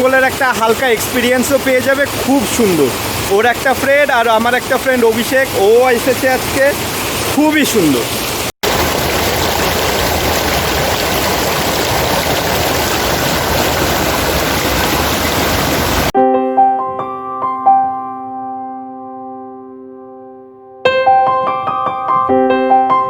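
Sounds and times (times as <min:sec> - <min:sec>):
running water rushing: 0:00.0 - 0:16.2
piano music: 0:16.1 - 0:23.0.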